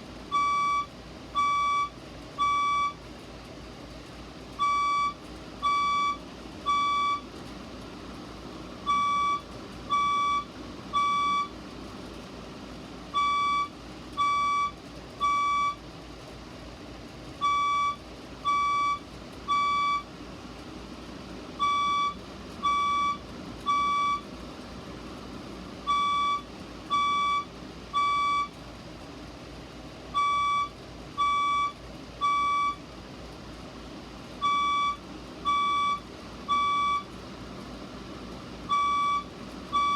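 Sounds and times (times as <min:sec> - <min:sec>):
fire alarm beeps: 0:00.3 - 0:03.0, 0:04.6 - 0:07.2, 0:08.8 - 0:11.5, 0:13.2 - 0:15.8, 0:17.4 - 0:20.1, 0:21.6 - 0:24.3, 0:25.9 - 0:28.6, 0:30.1 - 0:32.8, 0:34.4 - 0:37.1, 0:38.7 - 0:39.9.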